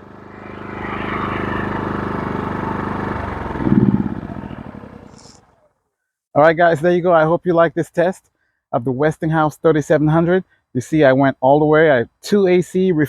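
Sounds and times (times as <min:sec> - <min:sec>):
generator running: 0:00.0 - 0:05.5.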